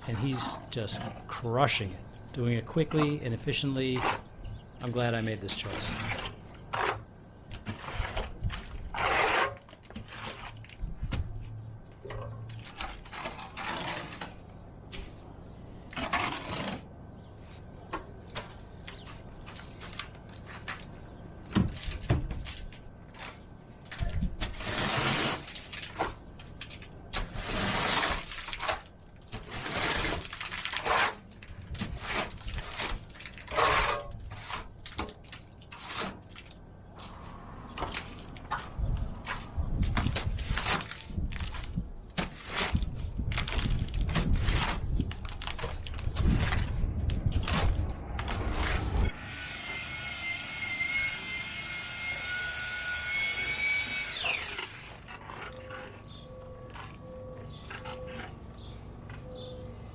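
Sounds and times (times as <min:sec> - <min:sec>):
trowel scraping stucco on wall: 0:02.9 - 0:10.9, 0:12.5 - 0:15.2, 0:15.9 - 0:16.9, 0:24.4 - 0:49.2, 0:49.8 - 0:56.2.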